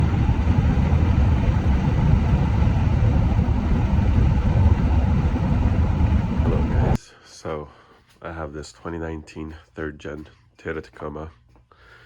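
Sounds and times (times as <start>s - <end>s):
vehicle engine rumble: 0.0s - 7.0s.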